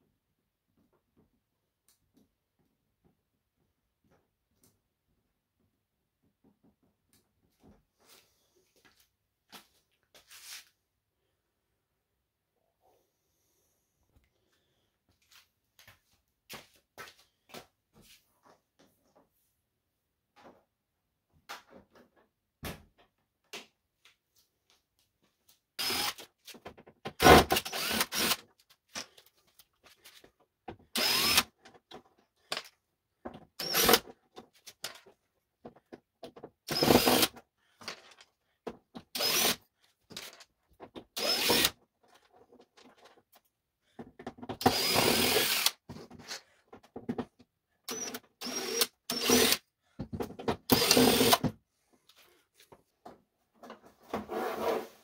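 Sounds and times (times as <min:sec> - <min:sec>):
cordless drill whining: 0:25.8 - 0:26.3, 0:27.2 - 0:28.5, 0:30.9 - 0:31.6, 0:33.6 - 0:34.1, 0:36.7 - 0:37.4, 0:39.1 - 0:40.3, 0:41.2 - 0:41.8, 0:44.6 - 0:45.8, 0:47.9 - 0:49.7, 0:50.7 - 0:51.5.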